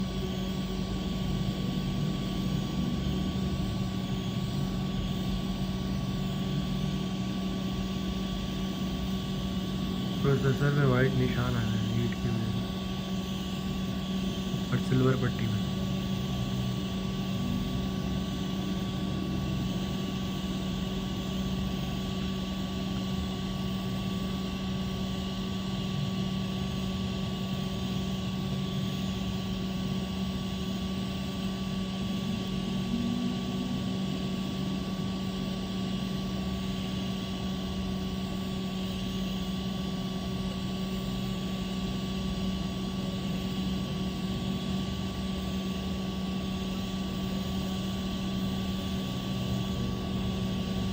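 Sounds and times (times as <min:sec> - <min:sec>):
mechanical hum: 0:00.0 - 0:50.9.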